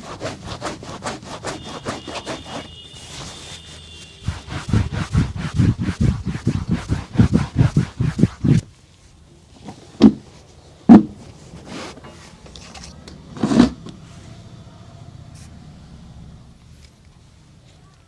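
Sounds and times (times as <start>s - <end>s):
rubbing strokes on boot: 0.0s - 12.1s
sharp knocks: 10.9s - 11.2s.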